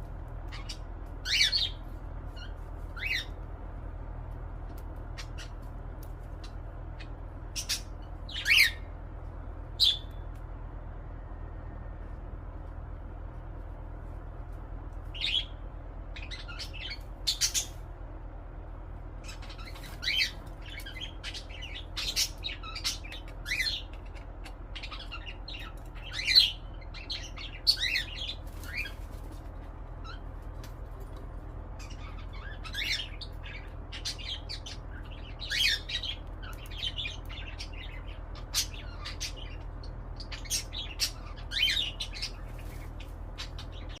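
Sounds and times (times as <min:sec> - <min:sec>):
cockatiel chirping and squawking: 0:00.5 - 0:03.4, 0:06.3 - 0:08.9, 0:16.2 - 0:17.8, 0:19.2 - 0:29.2, 0:30.0 - 0:30.3, 0:31.8 - 0:44.0.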